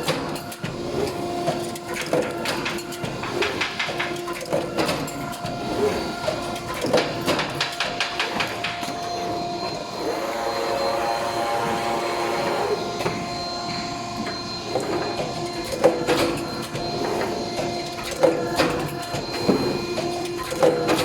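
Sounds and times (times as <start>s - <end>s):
machine clicks and clacks: 0.0s - 9.8s, 14.2s - 21.0s
machine whine: 0.0s - 21.0s.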